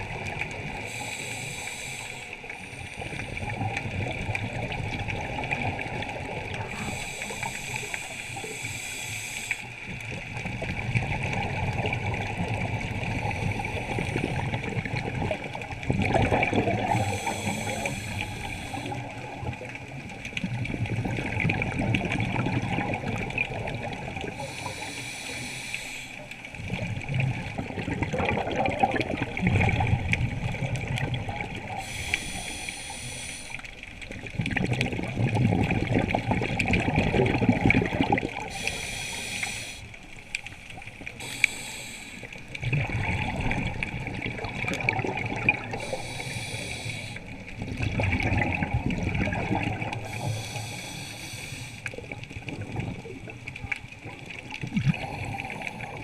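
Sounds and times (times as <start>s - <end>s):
underwater bubbling and gurgling: 0.0s - 56.0s
regulator breathing hiss: 0.8s - 3.4s, 6.7s - 9.9s, 16.9s - 19.2s, 24.4s - 26.2s, 31.8s - 33.8s, 38.5s - 40.0s, 41.1s - 42.5s, 45.7s - 47.4s, 50.0s - 52.0s.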